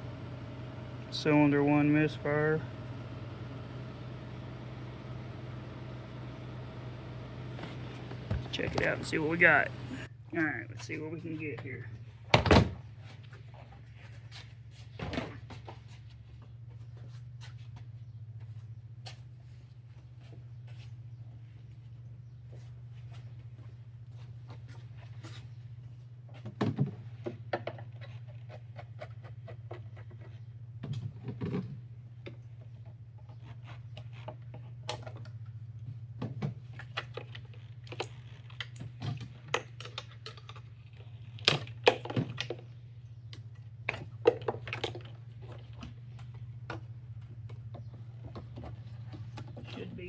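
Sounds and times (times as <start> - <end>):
steady low hum: 0.0 - 11.9.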